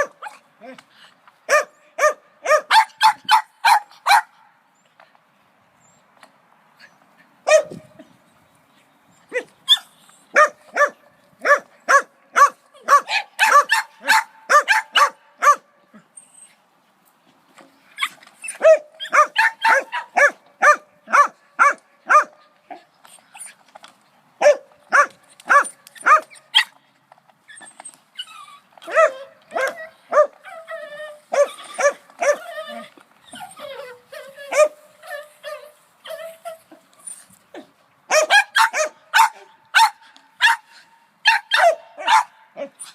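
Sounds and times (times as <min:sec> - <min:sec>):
dog barking: 0:01.5 - 0:04.3, 0:07.5 - 0:07.8, 0:10.4 - 0:15.6, 0:18.6 - 0:22.3, 0:24.4 - 0:26.2, 0:38.1 - 0:40.6, 0:41.3 - 0:42.4.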